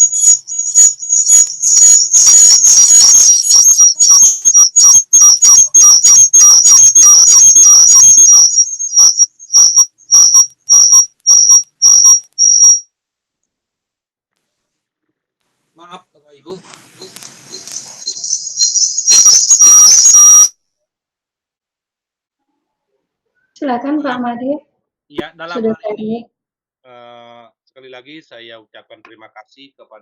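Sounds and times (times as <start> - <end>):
high-pitched electronic whistling beeps: 0.0 - 12.8, 17.0 - 20.5.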